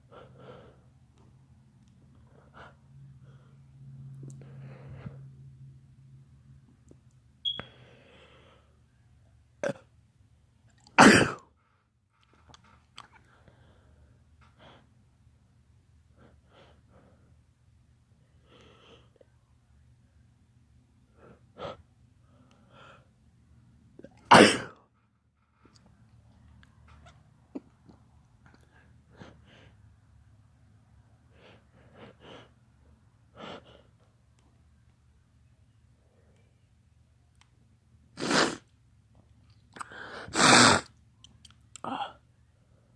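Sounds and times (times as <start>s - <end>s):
breaths: 2.2s - 5.5s, 7.6s - 8.9s, 13.1s - 14.9s, 18.3s - 19.3s, 21.1s - 23.2s, 39.8s - 40.4s
person sneezing: 11.0s - 11.4s, 24.1s - 24.8s, 38.2s - 38.7s, 40.2s - 41.0s.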